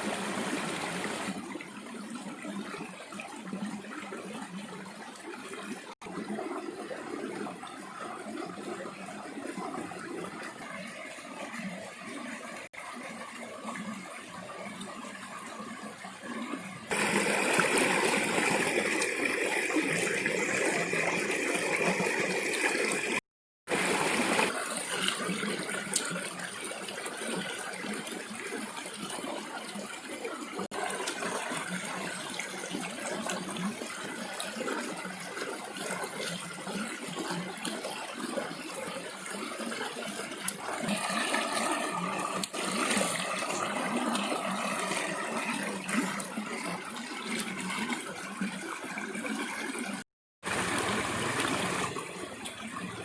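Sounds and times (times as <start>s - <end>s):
rushing running water: 0.0s - 1.5s, 16.9s - 53.0s.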